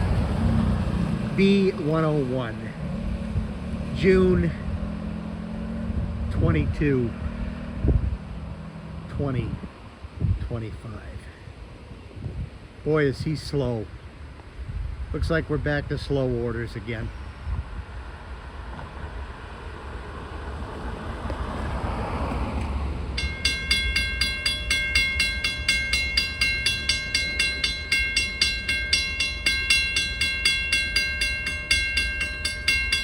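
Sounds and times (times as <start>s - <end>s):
freight train rumbling: 0.0s - 4.6s, 17.1s - 33.0s
railroad warning bell ringing: 23.2s - 33.0s.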